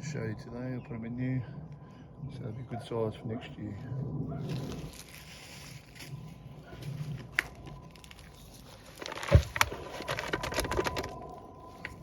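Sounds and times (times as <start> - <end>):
bedding crackling and rustling: 4.5 - 12.0.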